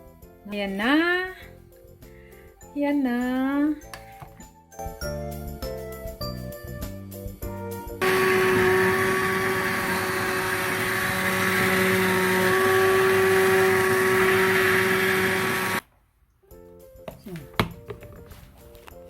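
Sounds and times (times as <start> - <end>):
electric blender motor running: 8.0 - 15.8.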